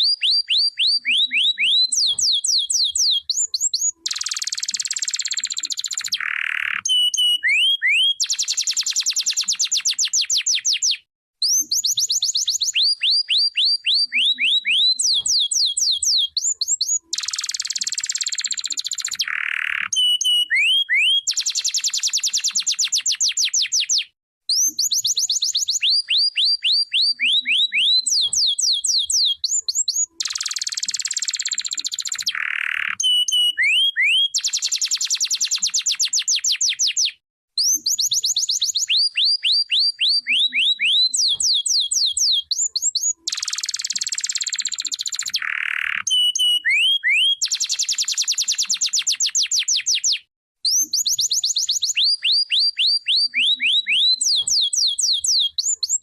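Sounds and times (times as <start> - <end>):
canary singing: 0.0 - 56.0.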